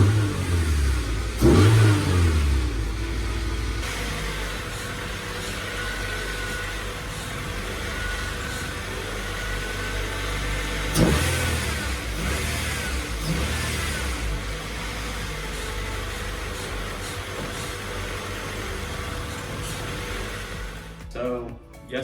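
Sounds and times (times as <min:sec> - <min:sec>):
engine revving: 0:00.0 - 0:21.2
car engine idling: 0:00.0 - 0:21.4.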